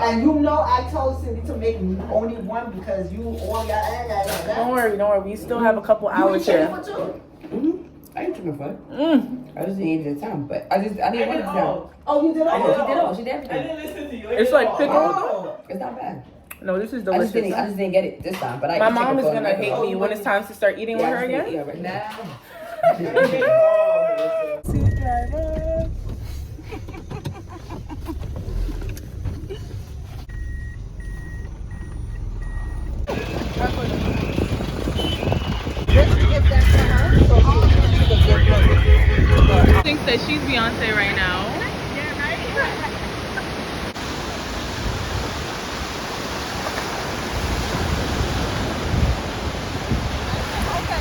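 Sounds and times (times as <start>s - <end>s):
vehicle engine rumble: 0.0s - 5.6s, 24.6s - 44.1s
reversing alarm beeping: 24.7s - 26.0s, 30.3s - 40.9s
wind rumbling on microphone: 33.0s - 51.0s
surf washing on a beach: 39.8s - 51.0s.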